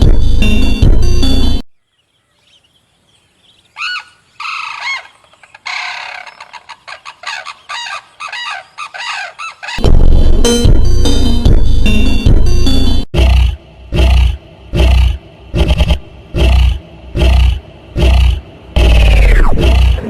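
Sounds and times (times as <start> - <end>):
bird cackling calls: 3.8 - 9.8.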